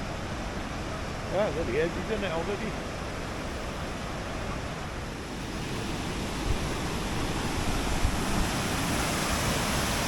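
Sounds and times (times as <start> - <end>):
waterfall rushing: 0.0 - 10.0
wind on microphone: 3.6 - 10.0.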